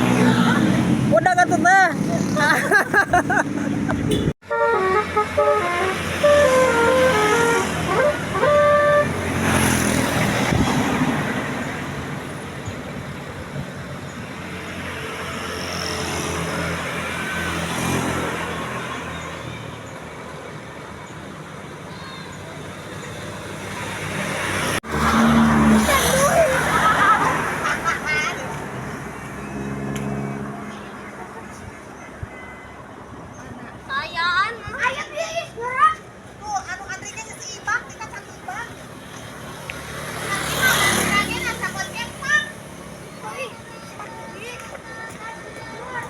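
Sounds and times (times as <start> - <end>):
road noise: 0.0 - 46.0
bus horn playing tune: 4.1 - 9.5.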